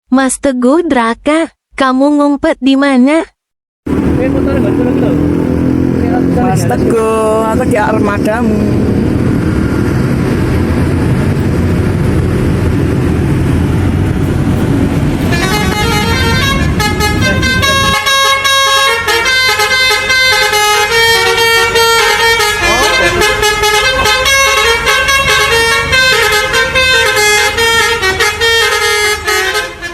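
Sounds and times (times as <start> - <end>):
bus engine rumbling: 3.9 - 29.9
air horn playing a tune: 15.2 - 29.9.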